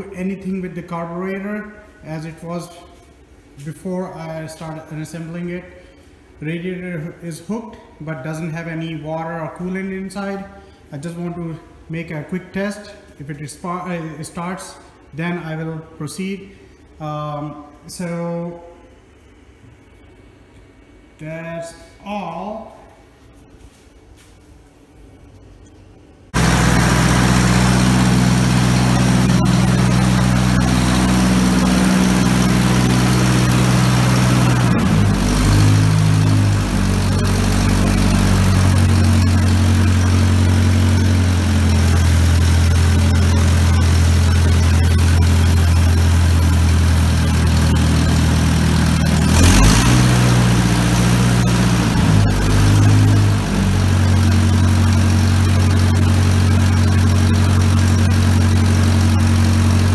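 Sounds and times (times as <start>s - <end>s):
tractor engine running: 26.4s - 59.9s.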